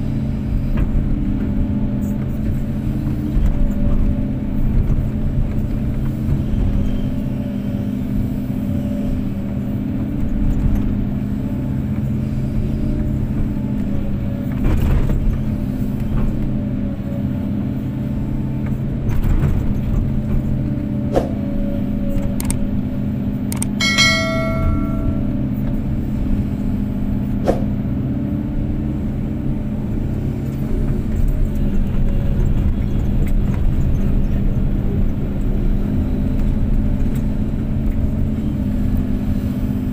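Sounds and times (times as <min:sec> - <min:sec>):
brief metallic ring: 0:23.8 - 0:25.5.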